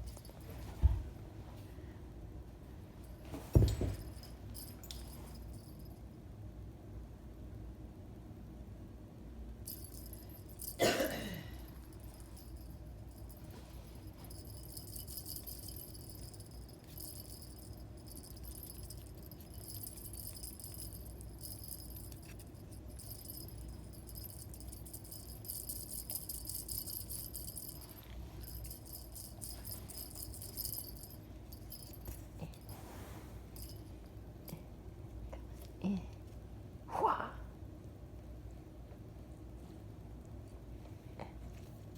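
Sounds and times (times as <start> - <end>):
light metallic jingling: 3.0 - 6.0, 9.7 - 34.6.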